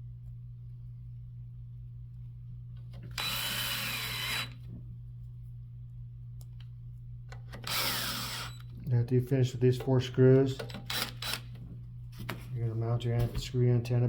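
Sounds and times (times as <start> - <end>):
steady low hum: 0.0 - 14.0
cordless drill whining: 3.1 - 4.6, 7.5 - 8.6, 10.6 - 11.5.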